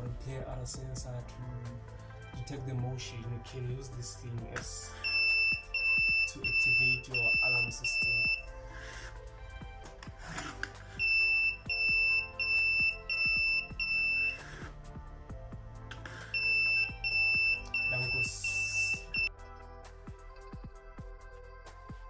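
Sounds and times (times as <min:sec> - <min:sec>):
music: 0:00.0 - 0:22.0
high-pitched buzzer beeping: 0:11.0 - 0:14.5.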